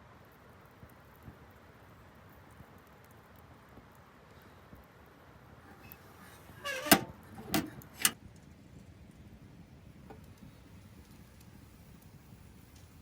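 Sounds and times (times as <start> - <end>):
scraping rustle: 5.7 - 8.2.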